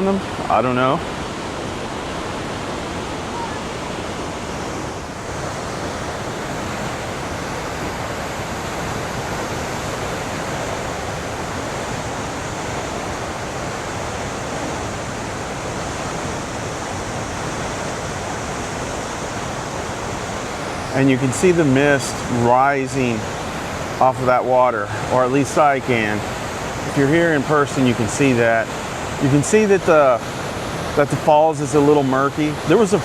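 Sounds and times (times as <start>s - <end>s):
waterfall rushing: 0.0s - 33.0s.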